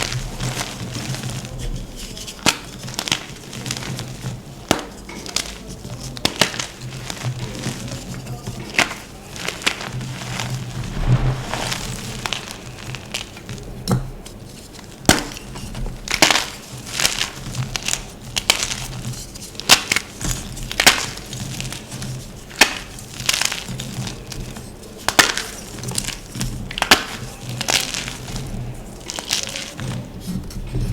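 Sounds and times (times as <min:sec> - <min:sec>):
chalk crumbling and crackling: 0:08.7 - 0:13.7
steady low hum: 0:10.6 - 0:13.8.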